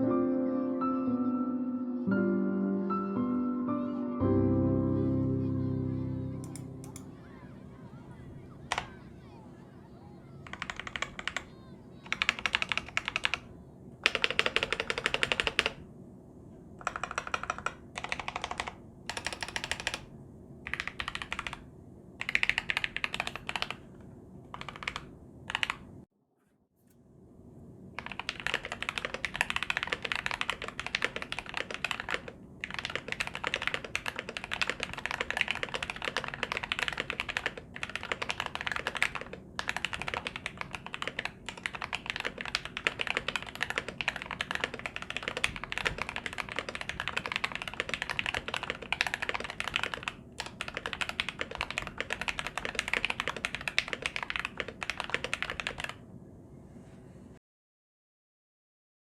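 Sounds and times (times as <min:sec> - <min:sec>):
fast typing on mechanical keyboard: 0:06.4 - 0:07.1, 0:08.7 - 0:09.0, 0:10.4 - 0:15.8, 0:16.8 - 0:20.1, 0:20.7 - 0:23.8, 0:24.5 - 0:25.9, 0:28.0 - 0:56.0.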